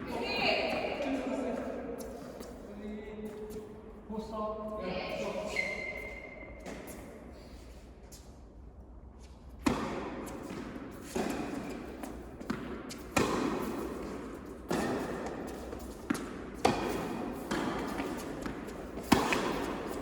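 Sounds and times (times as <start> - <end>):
tennis ball bouncing: 9.6 - 20.0
tennis ball struck by rackets: 9.6 - 20.0.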